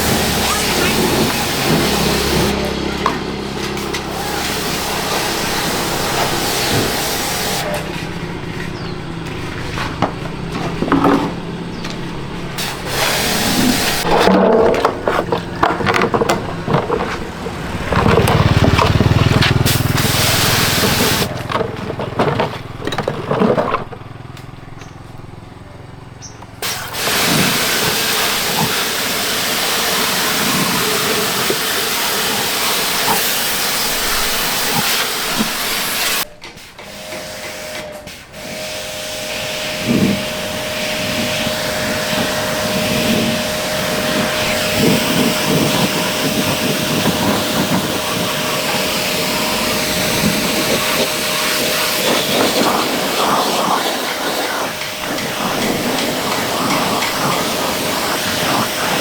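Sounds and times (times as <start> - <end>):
steady hissing: 39.0 - 59.0.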